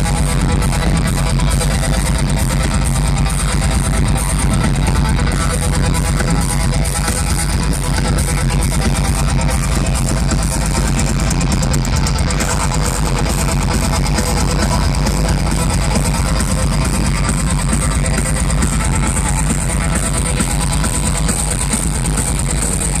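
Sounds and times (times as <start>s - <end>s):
bass guitar: 0.0s - 23.0s
distorted guitars: 0.0s - 23.0s
fast driving drums: 0.0s - 23.0s.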